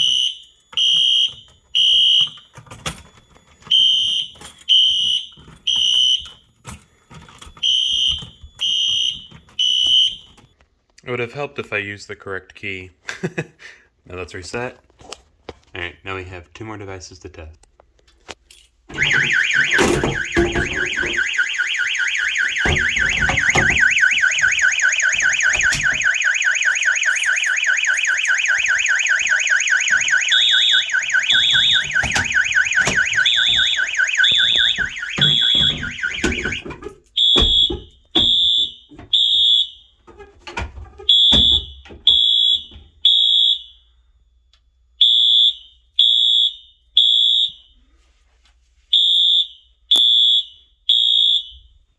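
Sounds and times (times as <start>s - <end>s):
high alarm beeps: 0.0s - 2.6s, 3.2s - 6.6s, 7.2s - 10.4s, 18.9s - 39.8s
fast-warbling electronic alarm tone: 18.9s - 36.6s.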